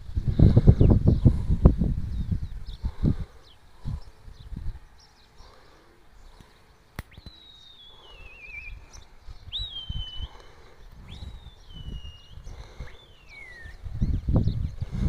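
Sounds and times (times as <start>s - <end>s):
sharp click: 7.0s - 7.4s
bird whistled calls: 7.0s - 14.8s.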